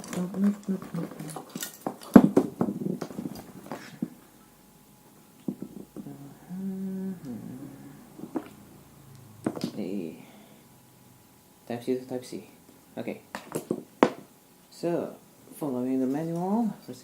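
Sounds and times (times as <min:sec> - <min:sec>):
man humming: 0:00.0 - 0:01.5, 0:05.7 - 0:08.6
cables and small parts rustling: 0:00.0 - 0:04.4.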